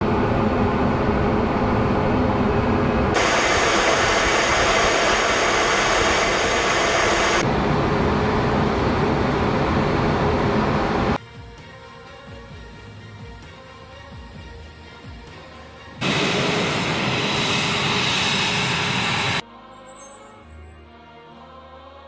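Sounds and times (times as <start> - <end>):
jet aircraft noise: 0.0 - 11.2, 16.0 - 19.4
low hum: 0.0 - 11.2, 16.0 - 19.4
bright hissy rush: 3.2 - 7.4.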